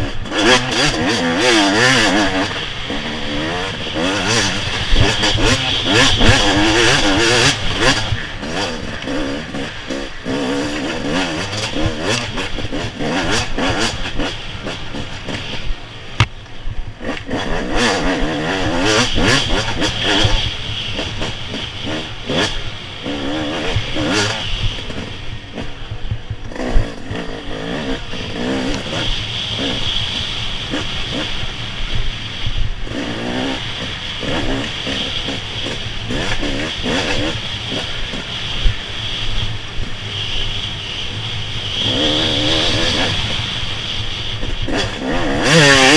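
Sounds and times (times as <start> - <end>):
engine revving hard: 0.0 - 15.4, 17.0 - 25.0, 32.9 - 38.2, 41.6 - 43.8, 44.5 - 45.9
rushing wind noise: 0.0 - 45.9.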